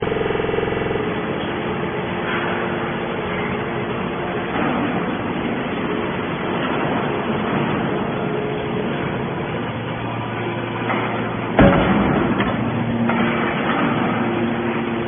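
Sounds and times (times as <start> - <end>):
hydraulic baler running: 0.0 - 15.0
strong pitched hum: 0.0 - 15.0.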